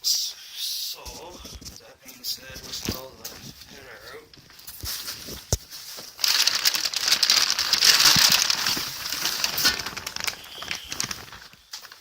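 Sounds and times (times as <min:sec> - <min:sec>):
packaging crinkling and rustling: 0:02.4 - 0:12.0.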